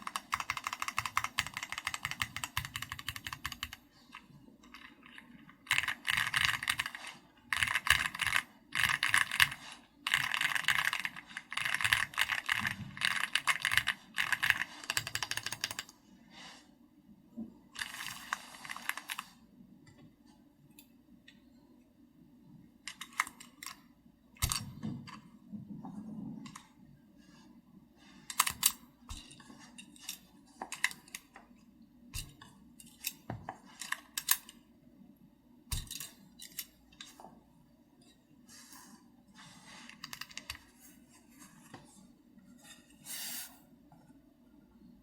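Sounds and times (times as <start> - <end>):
mechanical keyboard keystrokes: 0.0 - 3.8, 5.6 - 15.9.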